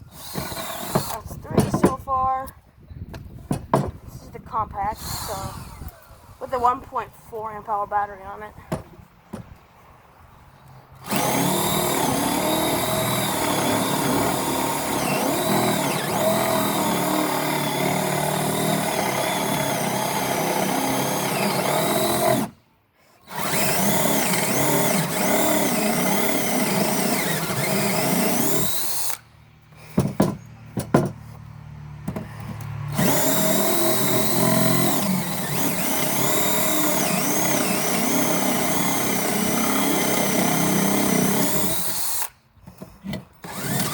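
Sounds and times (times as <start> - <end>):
cordless drill boring into wood: 0.0 - 1.9, 4.9 - 6.6, 11.0 - 22.6, 23.2 - 29.2, 32.9 - 42.4, 43.4 - 43.9.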